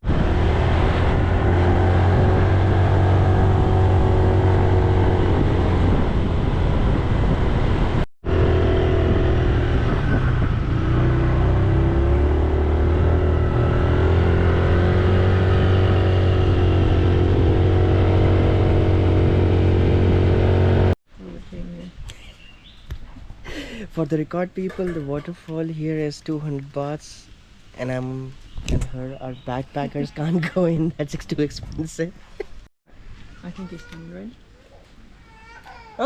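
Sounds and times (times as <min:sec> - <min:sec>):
motorbike engine while riding: 0:00.0 - 0:21.0.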